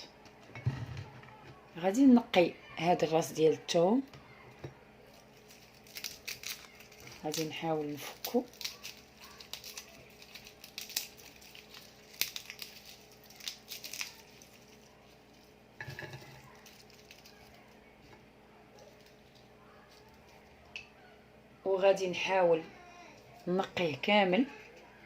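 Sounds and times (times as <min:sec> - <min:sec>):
garlic skin crackling: 0:05.0 - 0:20.9.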